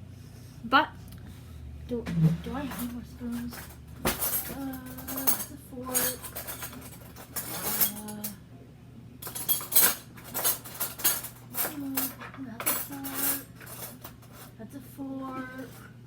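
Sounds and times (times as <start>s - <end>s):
metal cutlery clinking: 2.7s - 8.4s, 9.2s - 14.6s, 15.3s - 15.9s.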